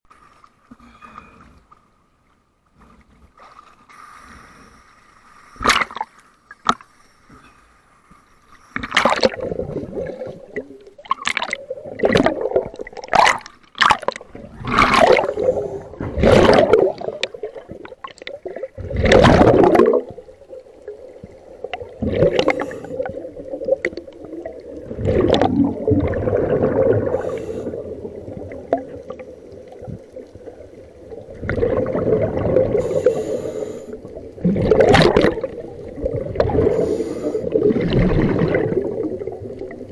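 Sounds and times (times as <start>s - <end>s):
underwater regulator bubbling: 8.8s - 39.9s.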